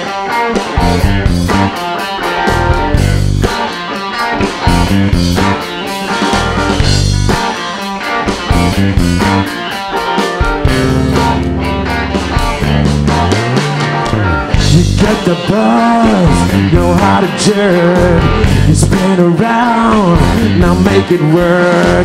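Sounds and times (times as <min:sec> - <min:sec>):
bass guitar: 0:00.0 - 0:22.0
drum kit beat: 0:00.0 - 0:22.0
electric guitar: 0:00.0 - 0:22.0.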